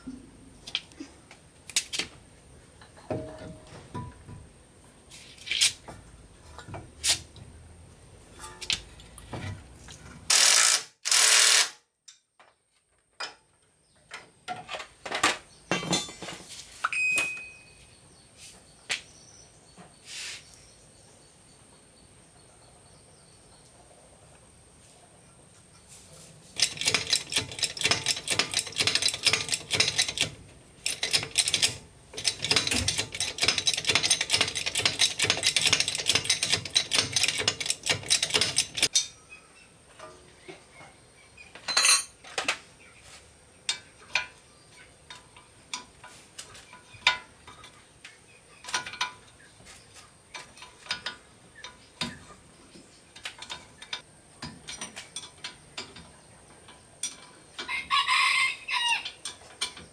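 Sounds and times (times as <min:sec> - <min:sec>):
dense metallic clicking and rattling: 0:26.6 - 0:39.1
metal clinks and taps: 0:26.6 - 0:39.2.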